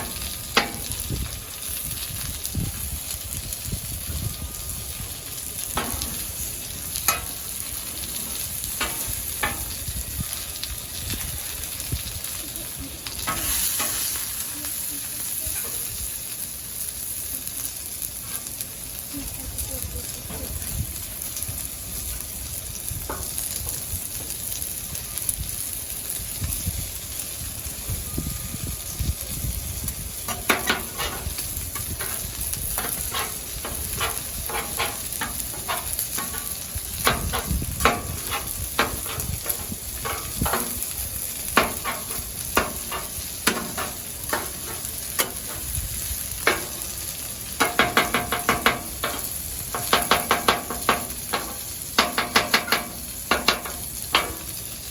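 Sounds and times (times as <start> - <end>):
food sizzling on a griddle: 0.0 - 54.9
metal spatula scraping and tapping: 7.0 - 7.4, 8.8 - 9.8, 30.3 - 40.8, 41.5 - 45.7, 46.4 - 46.8, 47.6 - 54.4.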